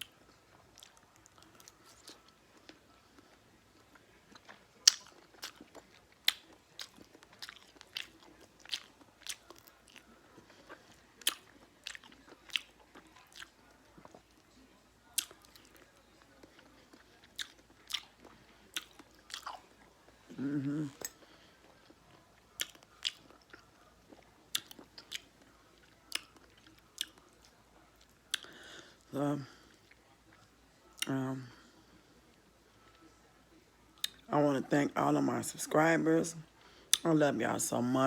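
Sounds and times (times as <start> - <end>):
person chewing: 0.0 - 14.4, 15.1 - 29.0
wet mouth clicks and smacks: 4.8 - 5.6.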